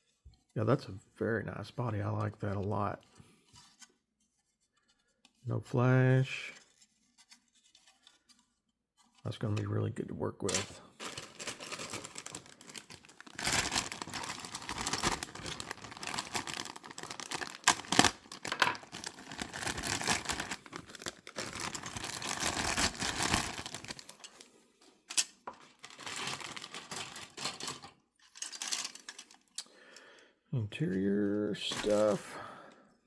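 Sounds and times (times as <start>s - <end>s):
plastic bags crinkling: 10.4s - 29.6s, 31.6s - 32.3s.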